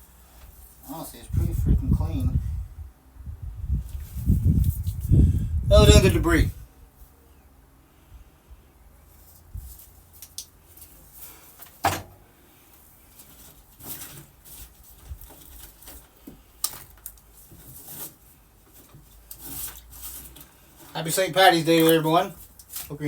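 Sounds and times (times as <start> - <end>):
objects handled by hand: 9.0 - 21.1, 21.7 - 23.0.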